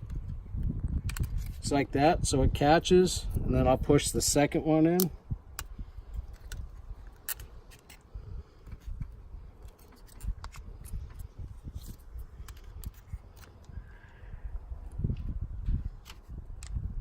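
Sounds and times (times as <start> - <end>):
plastic clicks and scrapes: 1.0 - 1.6, 5.6 - 13.7.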